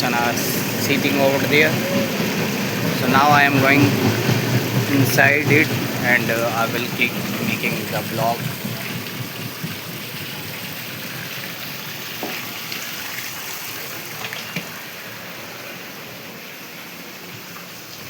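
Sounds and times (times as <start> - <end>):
steady hissing noise: 0.0 - 12.8.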